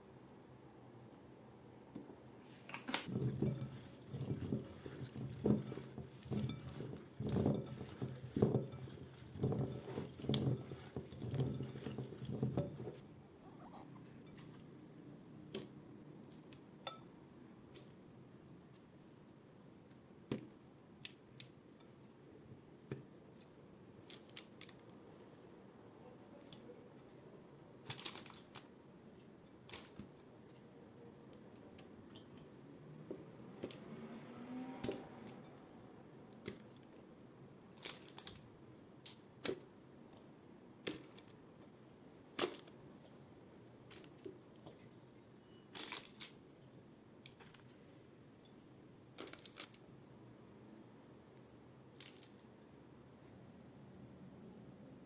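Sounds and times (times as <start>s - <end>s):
kitchen clicks and knocks: 2.8s - 13.0s.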